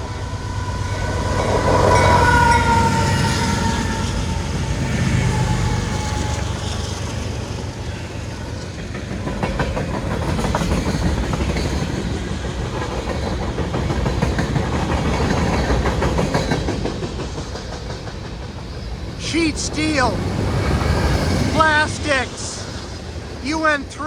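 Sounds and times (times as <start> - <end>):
freight train wheels rumbling: 0.0 - 24.0
wheels clicking over rail joints: 6.0 - 19.2.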